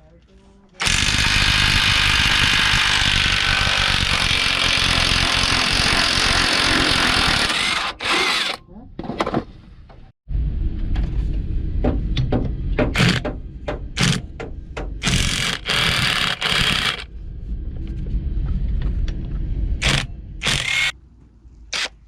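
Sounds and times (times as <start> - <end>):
impact wrench hammering: 12.8 - 17.1, 19.8 - 20.9.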